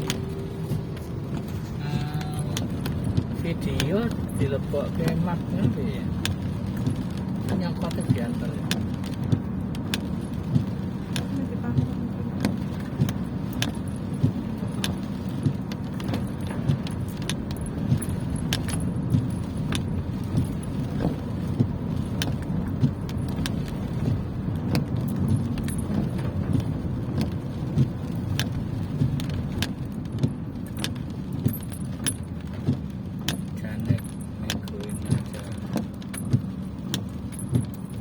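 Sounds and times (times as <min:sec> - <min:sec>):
car road and engine rumble: 0:00.0 - 0:38.0.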